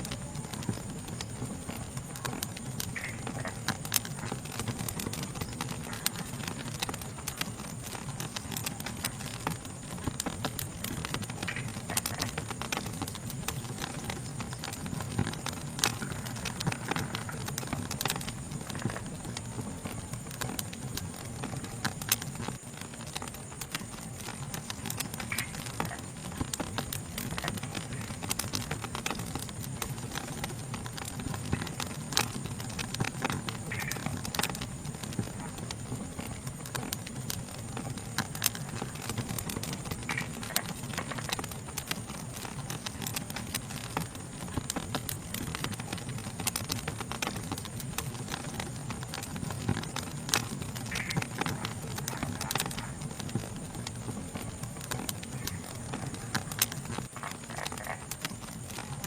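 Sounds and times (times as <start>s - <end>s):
night insects chorus: 0.0s - 59.0s
wood fire crackling and popping: 0.0s - 59.0s.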